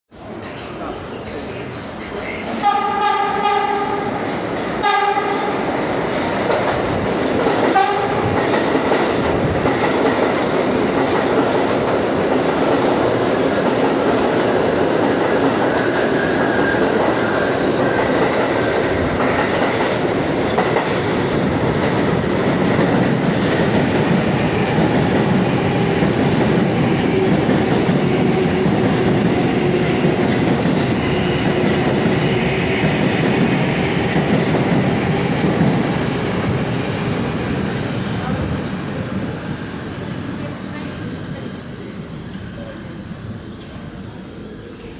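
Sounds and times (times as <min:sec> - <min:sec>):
train rumble and wheel clatter: 0:00.1 - 0:44.9
train horn blasts: 0:02.6 - 0:04.1, 0:04.8 - 0:05.5.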